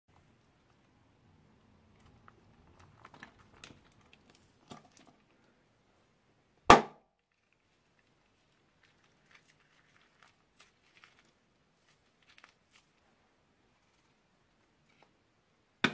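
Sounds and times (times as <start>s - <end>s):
plastic bags and slime crinkling: 1.6s - 5.5s, 7.2s - 15.2s
sharp loud pop: 6.7s - 7.0s.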